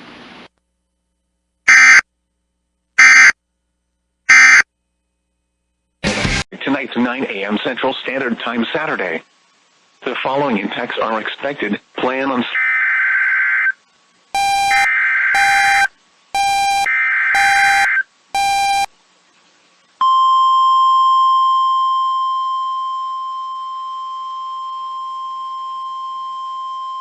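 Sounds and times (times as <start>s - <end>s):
steady warning alarm tone: 1.7s - 2.0s, 3.0s - 3.4s, 4.3s - 4.6s, 14.4s - 18.9s.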